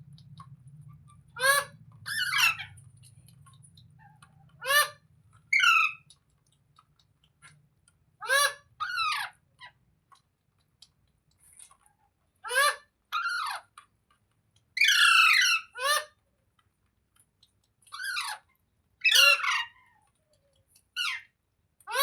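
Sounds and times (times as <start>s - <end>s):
parrot calling loudly: 1.3s - 2.8s, 4.0s - 6.0s, 8.2s - 9.4s, 14.8s - 16.1s, 19.0s - 19.8s.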